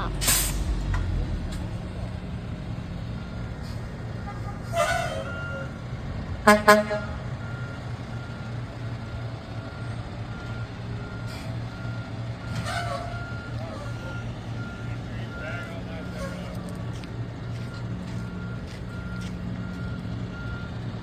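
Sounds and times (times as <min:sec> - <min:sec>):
heavy truck engine running: 0:00.0 - 0:21.0
loud horn toots: 0:04.2 - 0:05.7, 0:06.4 - 0:07.2
faint reversing alarm beeping: 0:09.6 - 0:20.8.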